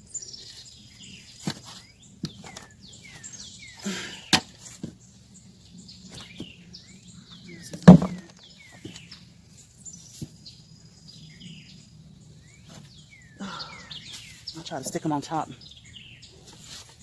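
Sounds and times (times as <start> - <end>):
birds chirping: 0.0 - 17.0
digging in soil: 0.2 - 5.1, 16.3 - 17.0
thud: 7.8 - 8.3
sharp knock: 7.9 - 8.3.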